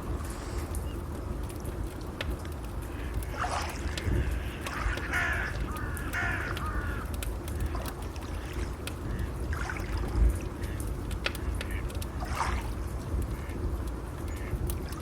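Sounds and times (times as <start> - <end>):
wood fire crackling: 0.0 - 15.0
water washing: 3.0 - 10.5.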